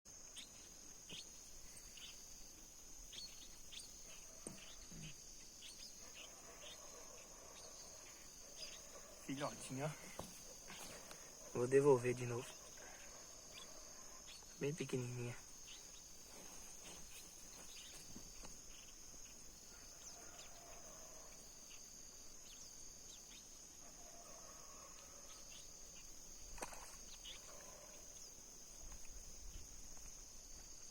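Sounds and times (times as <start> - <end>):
crickets chirping: 0.1 - 30.9
faint distant calls: 0.2 - 29.3.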